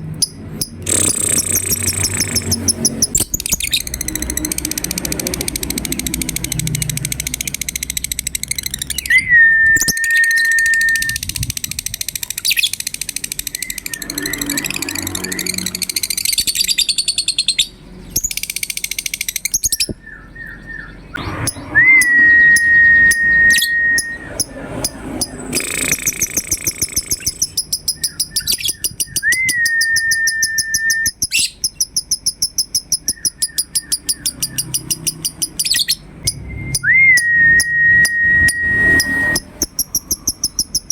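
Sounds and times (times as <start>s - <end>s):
lovebirds chattering in fast trills: 0.2s - 9.2s, 9.8s - 36.4s, 37.6s - 40.9s
clear rising whistle: 9.0s - 11.2s, 13.5s - 16.6s, 21.2s - 24.9s, 28.2s - 31.2s, 36.2s - 39.6s.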